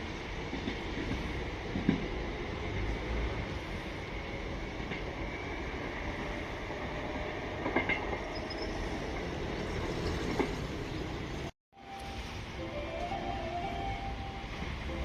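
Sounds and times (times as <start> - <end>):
train rumbling along track: 0.0 - 15.0
wheel clacks over rail joints: 7.6 - 8.4.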